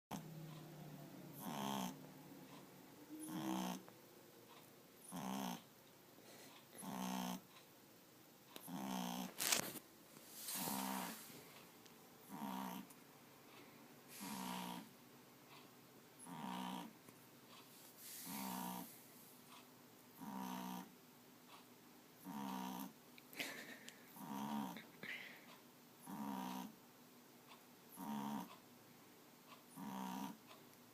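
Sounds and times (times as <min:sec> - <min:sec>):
loud snoring: 0:01.4 - 0:02.0, 0:03.2 - 0:03.8, 0:05.0 - 0:05.6, 0:06.8 - 0:07.4, 0:08.6 - 0:09.4, 0:10.5 - 0:11.3, 0:12.3 - 0:12.9, 0:14.1 - 0:14.9, 0:16.2 - 0:16.9, 0:18.2 - 0:18.9, 0:20.2 - 0:20.9, 0:22.2 - 0:22.9, 0:24.2 - 0:24.8, 0:26.0 - 0:26.8, 0:28.0 - 0:28.5, 0:29.7 - 0:30.4.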